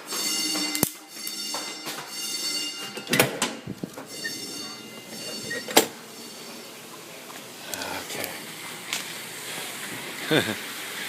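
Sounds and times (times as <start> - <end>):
fire alarm ringing: 0.0 - 7.0.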